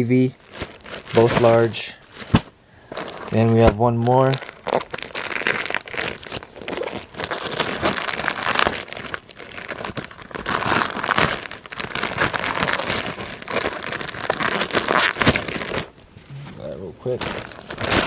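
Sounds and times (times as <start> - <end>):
plastic packaging crinkling: 0.4 - 1.2, 4.1 - 16.8.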